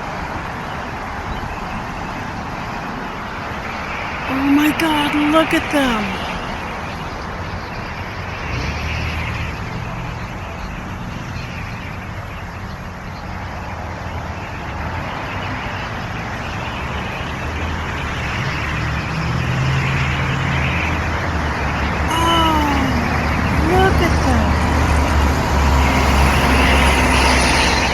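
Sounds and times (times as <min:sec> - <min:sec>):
vehicle engines rumbling: 0:05.8 - 0:27.9.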